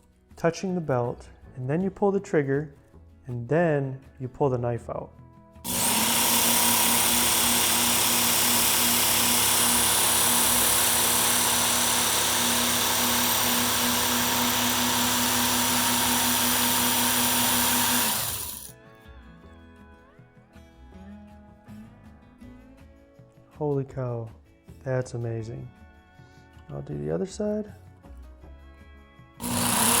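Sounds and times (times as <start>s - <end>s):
electric belt sharpener grinding knife: 5.7s - 18.7s, 29.4s - 30.0s.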